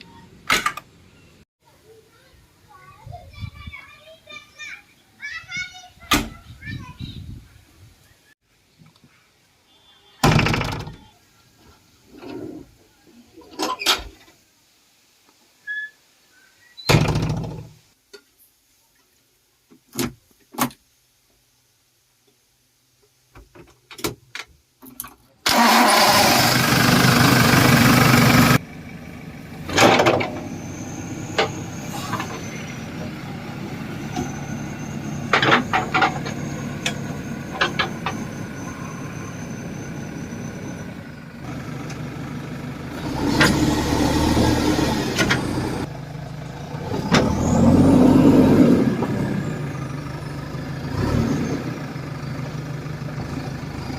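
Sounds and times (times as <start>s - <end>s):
diesel engine starting and running: 25.4s - 53.9s.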